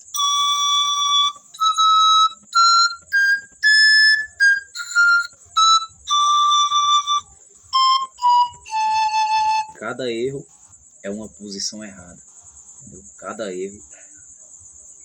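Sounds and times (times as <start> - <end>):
pan flute notes: 0.0 - 10.4.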